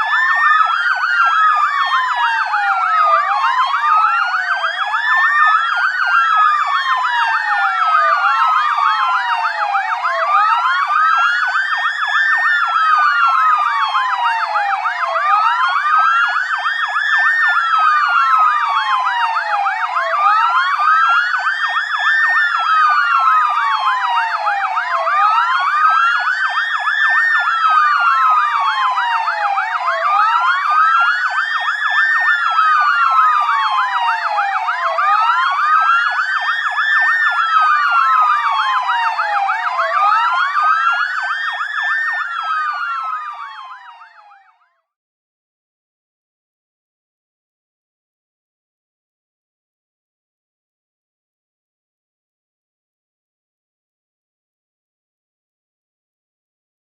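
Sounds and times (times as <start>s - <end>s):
police siren wailing: 0.0s - 44.9s.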